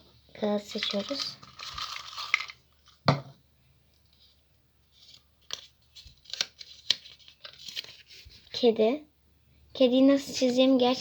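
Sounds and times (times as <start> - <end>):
paper rustling and crackling: 0.7 - 3.0, 4.9 - 8.6.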